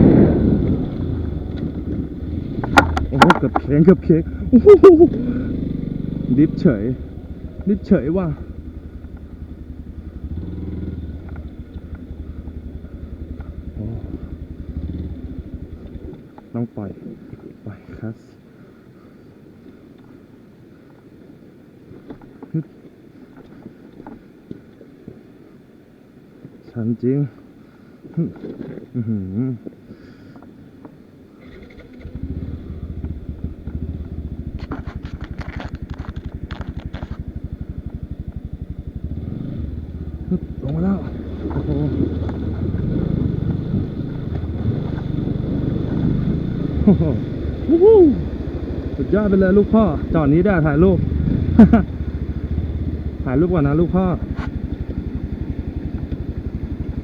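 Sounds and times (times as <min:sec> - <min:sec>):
sharp clattering knocks: 0:00.0 - 0:03.9
dirt bike engine chugging: 0:00.0 - 0:16.2, 0:31.4 - 0:57.0.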